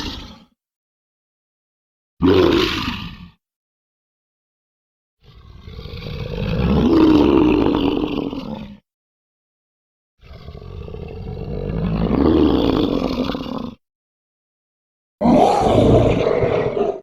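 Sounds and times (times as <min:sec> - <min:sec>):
dragon roar: 0:00.0 - 0:00.5, 0:02.2 - 0:03.4, 0:05.2 - 0:08.8, 0:10.2 - 0:13.8, 0:15.2 - 0:17.0.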